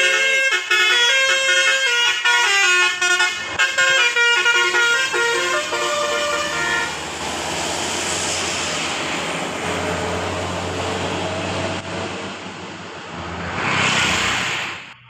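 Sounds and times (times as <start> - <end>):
bus horn playing multi-note tune: 0.0 - 7.0
bus engine hum: 0.0 - 15.0
loud rushing of passing bus: 2.3 - 15.0.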